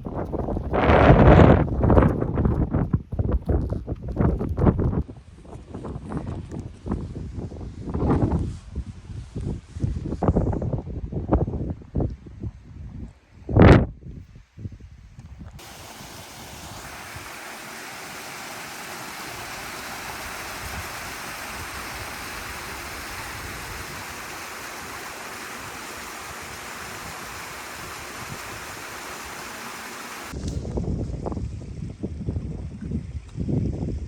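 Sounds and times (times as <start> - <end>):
mountain stream rushing: 15.6 - 30.4.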